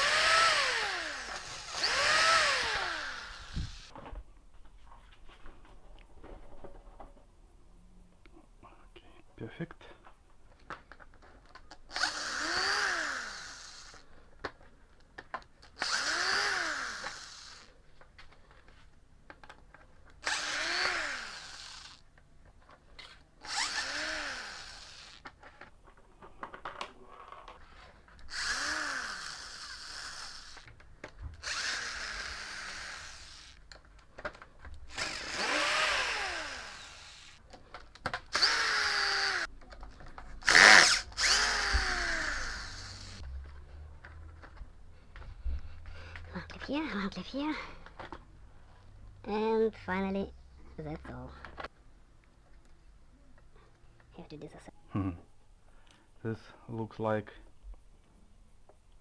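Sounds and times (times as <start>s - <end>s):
cordless drill motor whine: 0.0s - 3.9s, 11.9s - 14.0s, 15.8s - 17.7s, 20.2s - 22.0s, 23.4s - 25.2s, 28.3s - 30.7s, 31.4s - 33.6s, 34.9s - 37.4s, 38.3s - 39.5s, 40.4s - 43.2s.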